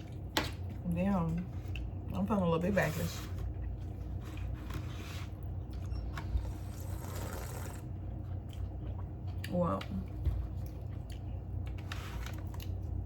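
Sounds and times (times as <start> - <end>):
chewing and mouth noises: 0.0 - 2.3, 5.4 - 13.0
steady low hum: 0.0 - 13.0.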